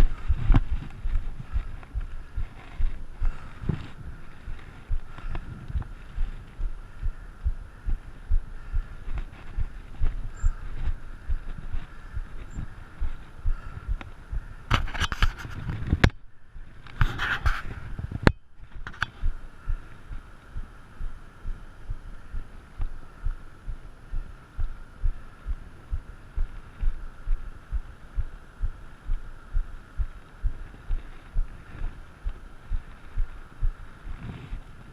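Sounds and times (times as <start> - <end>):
rustling noise bursts: 0.0 - 7.2, 8.7 - 16.1, 16.8 - 20.7
rhythmic low thumping: 0.0 - 14.7, 18.2 - 34.2
steady hiss: 0.0 - 14.7, 15.4 - 34.9.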